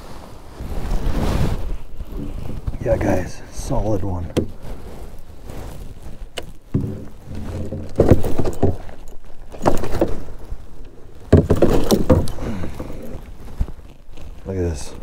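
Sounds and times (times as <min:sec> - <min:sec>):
water splashing around kayak: 0:00.0 - 0:14.4.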